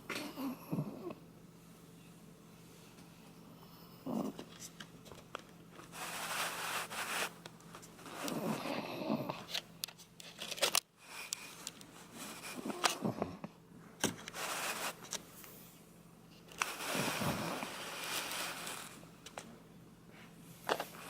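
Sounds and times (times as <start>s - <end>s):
dog snoring: 0.1s - 1.2s, 3.6s - 4.4s, 8.1s - 9.5s, 12.4s - 13.5s.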